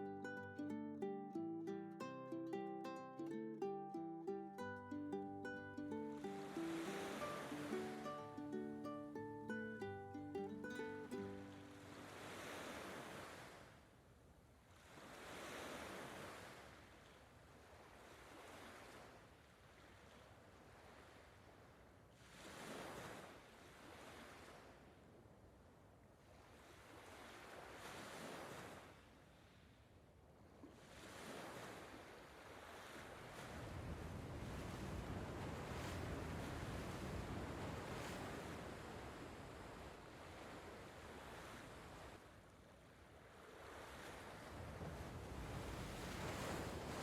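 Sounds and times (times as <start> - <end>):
sea waves washing in: 0.0 - 13.8, 30.8 - 42.2, 43.2 - 47.0
wind rumble on microphone: 33.3 - 42.0, 44.3 - 47.0.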